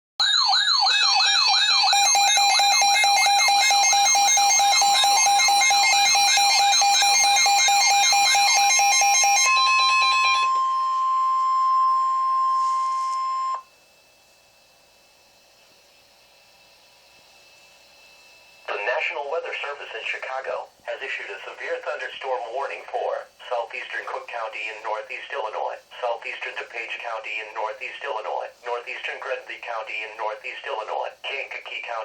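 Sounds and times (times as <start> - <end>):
warbling alert siren tone: 0.2 - 13.6
steady warning alarm tone: 0.2 - 18.8
steady high tones: 1.0 - 13.6.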